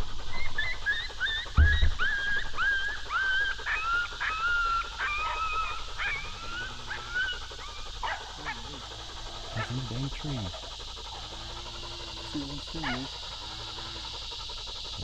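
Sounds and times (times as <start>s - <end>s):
dog yipping and whining: 0.3s - 8.2s
low thump: 1.6s - 2.2s.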